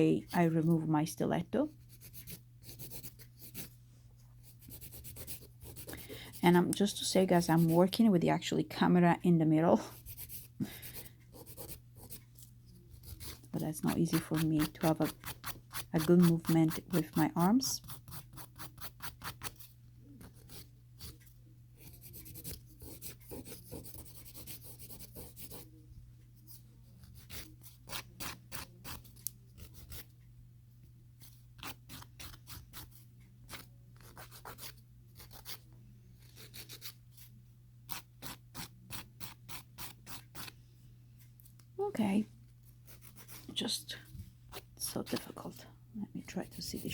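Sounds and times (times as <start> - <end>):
nail file rasping: 1.9 - 3.7, 12.9 - 17.2, 17.8 - 19.7, 21.8 - 25.6, 31.6 - 35.6, 36.2 - 37.0, 37.9 - 40.5, 42.9 - 43.5.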